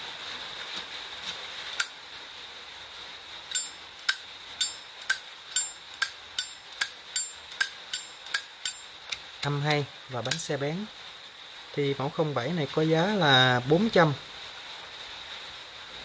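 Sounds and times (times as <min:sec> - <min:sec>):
lighter lid metallic clicks: 0:01.8 - 0:02.0, 0:03.5 - 0:08.8.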